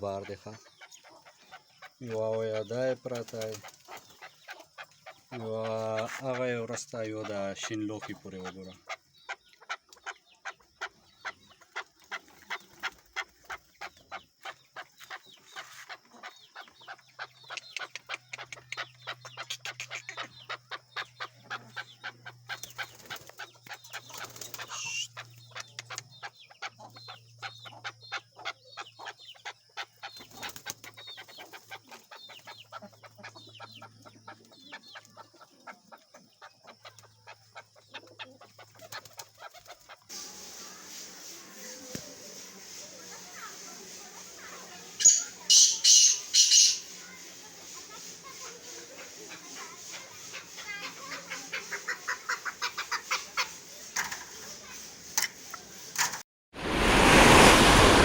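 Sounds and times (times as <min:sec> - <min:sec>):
partridge clucking call: 0:00.0 - 0:30.6, 0:37.9 - 0:55.7.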